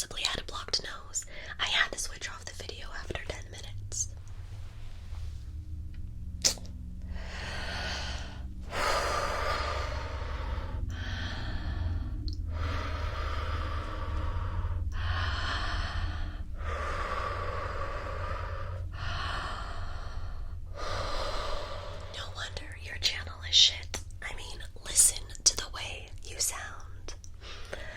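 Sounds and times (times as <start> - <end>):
slow deep breathing: 3.5 - 22.7, 27.4 - 27.9.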